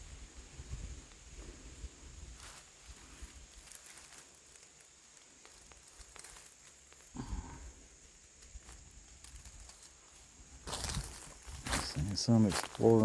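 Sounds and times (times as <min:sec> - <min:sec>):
twigs snapping: 0:03.5 - 0:07.1
footsteps on woodland floor: 0:09.6 - 0:13.0.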